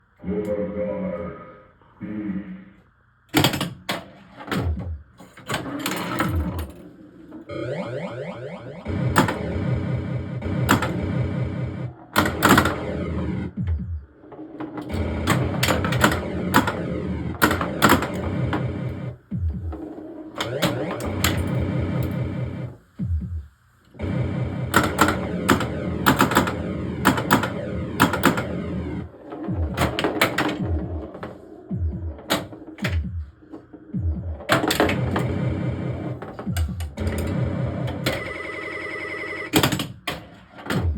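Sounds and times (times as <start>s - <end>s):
falling electronic tones: 7.5s - 11.9s
pinball electronic sound effects: 7.5s - 14.0s, 14.6s - 22.8s, 24.0s - 31.1s, 34.0s - 39.8s.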